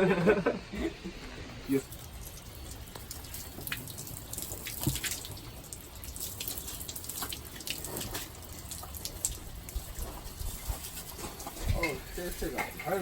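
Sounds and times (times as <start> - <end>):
water dripping and trickling: 1.7 - 13.0
small water splashes: 1.8 - 11.5.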